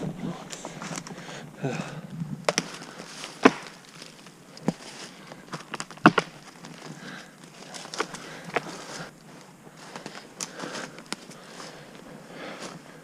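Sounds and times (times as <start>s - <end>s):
twigs snapping underfoot: 2.4s - 11.7s.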